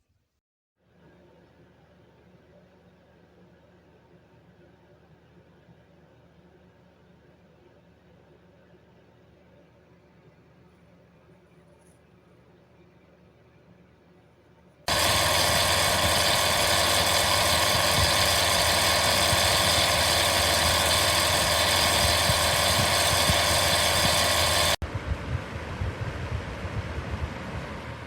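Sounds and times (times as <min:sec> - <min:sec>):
loud rushing machine hum: 0:14.9 - 0:24.8.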